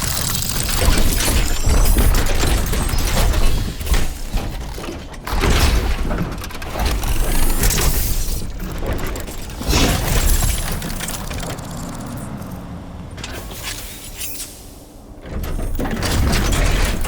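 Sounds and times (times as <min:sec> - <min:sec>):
mechanical clicking and ratcheting: 0:00.0 - 0:12.6.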